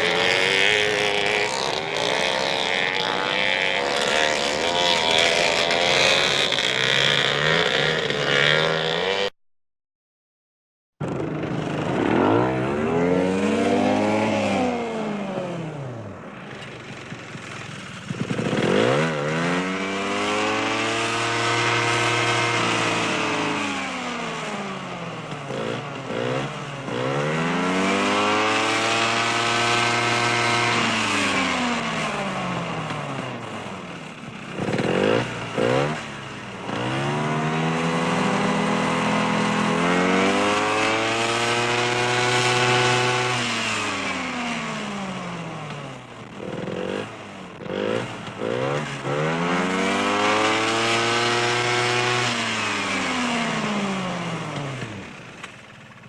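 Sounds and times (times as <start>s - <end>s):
atv engine revving: 0.0s - 9.3s, 11.0s - 56.0s.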